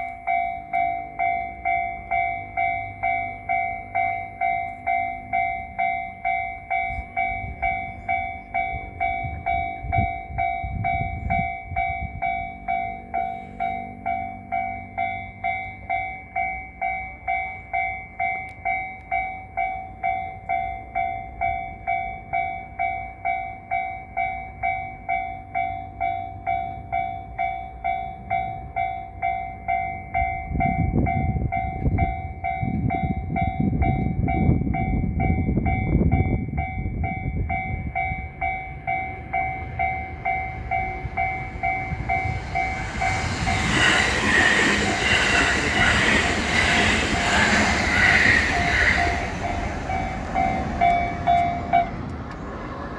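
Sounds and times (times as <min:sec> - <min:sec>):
level crossing warning bell: 0:00.0 - 0:52.3
train rumble: 0:00.0 - 0:52.9.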